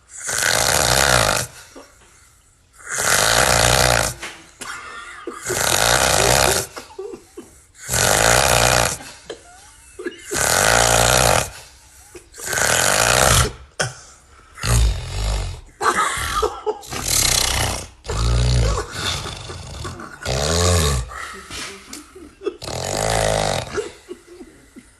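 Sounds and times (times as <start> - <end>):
man snoring loudly: 0.1 - 1.7, 2.8 - 4.3, 5.4 - 6.8, 7.8 - 9.2, 10.3 - 11.7, 12.4 - 13.8, 14.6 - 21.3, 22.6 - 24.1.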